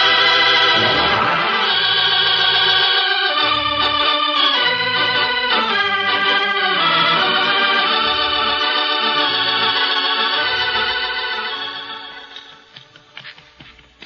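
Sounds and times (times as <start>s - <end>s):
organ chords: 0.0s - 12.7s
low bass line: 0.7s - 1.9s.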